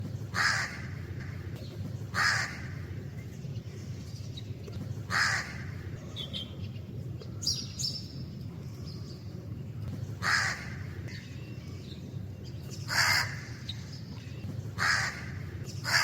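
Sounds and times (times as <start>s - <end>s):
crow cawing: 0.3s - 1.4s, 2.2s - 2.8s, 5.1s - 5.8s, 10.2s - 10.9s, 12.9s - 13.6s, 14.8s - 16.0s.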